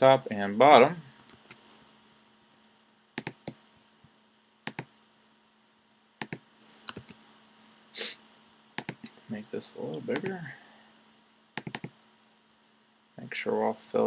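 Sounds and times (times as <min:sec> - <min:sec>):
faint electrical hum: 0:00.0 - 0:14.0
computer keyboard clicks: 0:01.2 - 0:01.6, 0:06.2 - 0:07.2, 0:08.8 - 0:09.1, 0:11.6 - 0:11.9.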